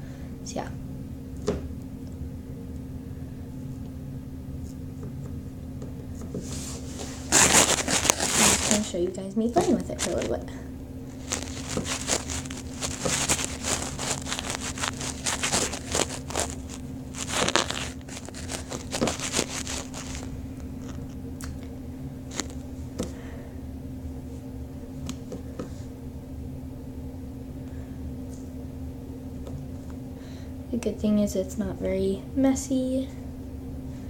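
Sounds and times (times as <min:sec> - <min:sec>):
slime crackling and tearing: 0:07.1 - 0:08.9, 0:11.1 - 0:21.1, 0:22.3 - 0:22.6.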